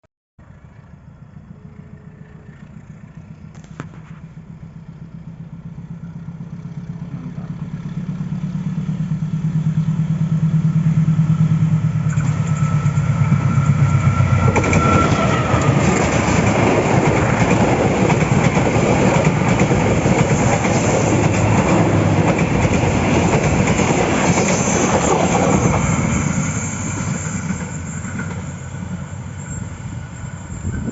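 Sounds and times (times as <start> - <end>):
train engine drone: 0.4 - 30.9
train wheels clattering on rails: 11.6 - 29.1.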